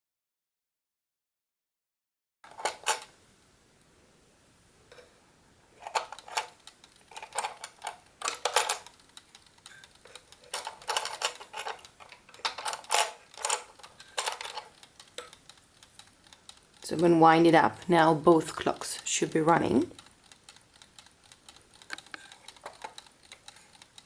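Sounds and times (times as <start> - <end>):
winding ratchet clicking: 5.8 - 17.1, 19.9 - 24.0.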